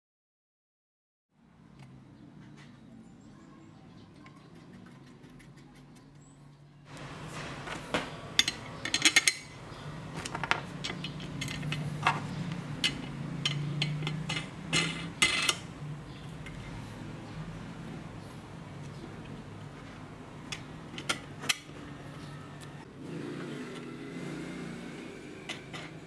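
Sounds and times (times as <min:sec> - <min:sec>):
small metal parts clinking: 0:08.4 - 0:09.5, 0:10.2 - 0:12.2.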